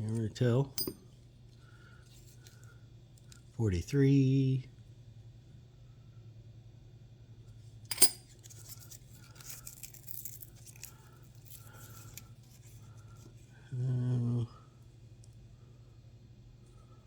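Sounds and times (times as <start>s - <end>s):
coin clinking: 0.7s - 1.0s, 7.9s - 8.3s
coins rustling and scraping: 7.9s - 12.8s.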